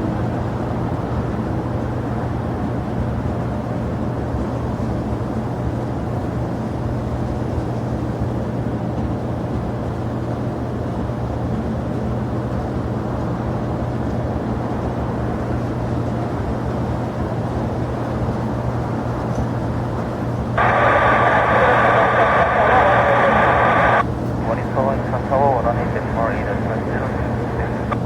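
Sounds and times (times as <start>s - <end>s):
jet engines rumbling: 20.6s - 28.0s.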